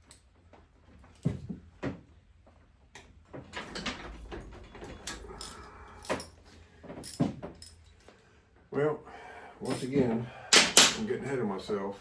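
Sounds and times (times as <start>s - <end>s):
hand tools clicking on bolts: 5.0s - 6.3s.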